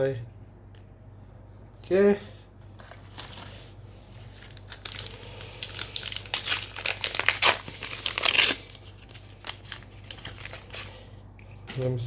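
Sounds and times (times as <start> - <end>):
foil wrapper crinkling: 2.8 - 11.1.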